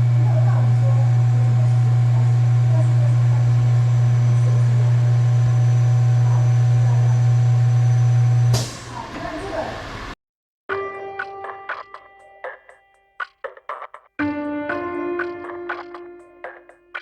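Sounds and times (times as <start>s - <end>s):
wheel bearing drone: 0.0s - 10.2s.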